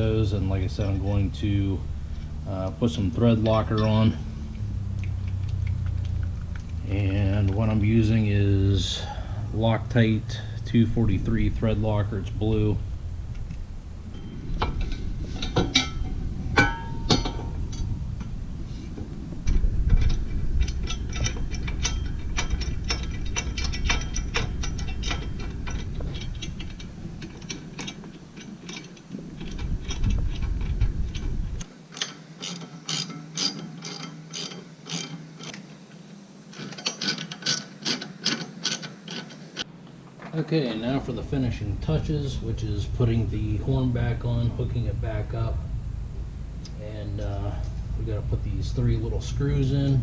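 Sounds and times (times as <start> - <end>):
low rumbling handling noise: 0.0 - 50.0
socket ratchet clicking: 19.4 - 35.6, 36.5 - 39.6.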